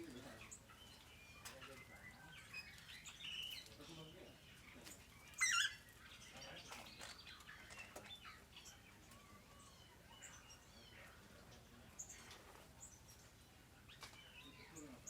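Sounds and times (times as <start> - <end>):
bird warbling call: 5.3 - 6.0.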